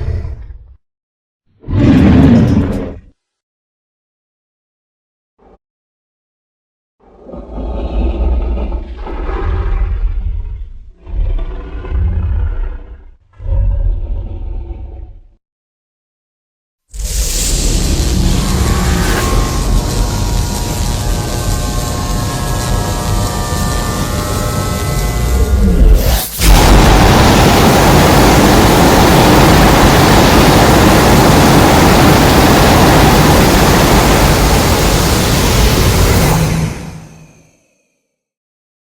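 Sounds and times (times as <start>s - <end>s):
monster roars: 7.0s - 15.4s
loud rushing noise: 17.0s - 37.4s
heavy deep rumble: 17.4s - 37.1s.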